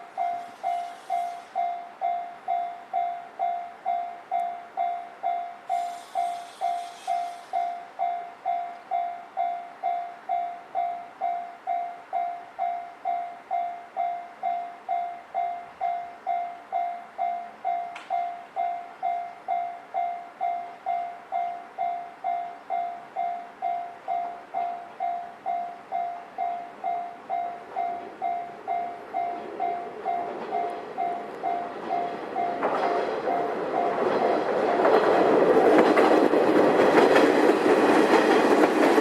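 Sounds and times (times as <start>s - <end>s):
level crossing warning bell ringing: 0.0s - 34.9s
sharp click: 17.9s - 18.2s.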